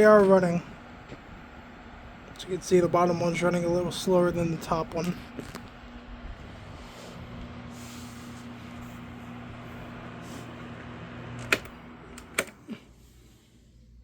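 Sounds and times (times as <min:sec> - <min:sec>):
table fans humming and rushing air: 0:00.0 - 0:14.0
switch clicking: 0:11.4 - 0:12.6.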